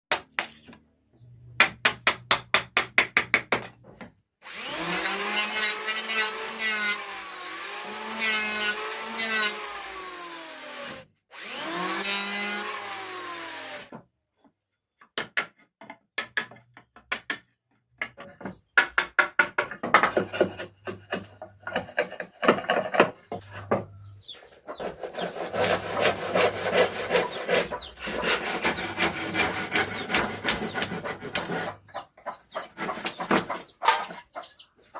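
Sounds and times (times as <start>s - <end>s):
hand saw cutting wood: 4.4s - 13.9s, 20.1s - 23.2s, 24.1s - 34.4s.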